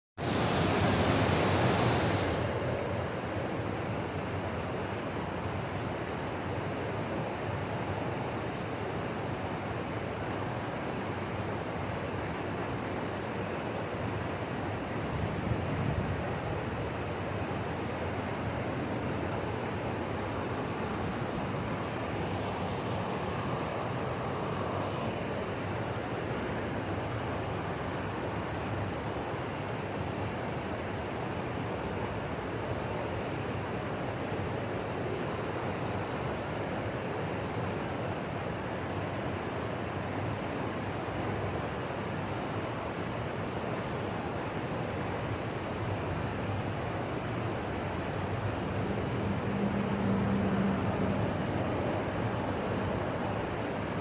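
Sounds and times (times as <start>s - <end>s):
waterfall roaring: 0.2s - 3.9s, 17.0s - 29.8s.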